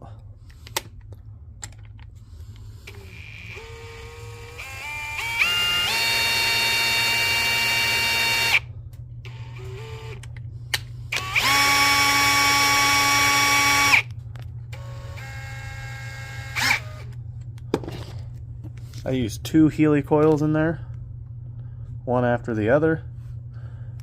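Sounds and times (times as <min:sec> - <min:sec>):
power tool motor whining: 0:02.8 - 0:08.6, 0:09.3 - 0:10.2, 0:11.1 - 0:14.1, 0:14.8 - 0:17.1.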